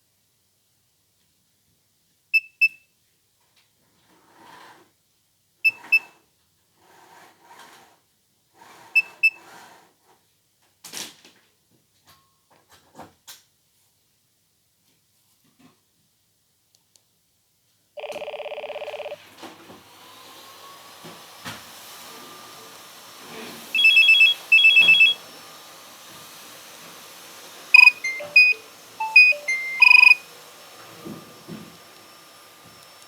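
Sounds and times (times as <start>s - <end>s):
phone buzzing beep: 18.0s - 19.2s, 23.8s - 25.2s, 27.8s - 30.2s
warbling ringtone trills: 18.0s - 19.2s, 27.8s - 30.2s
electronic tune notes: 27.8s - 30.2s.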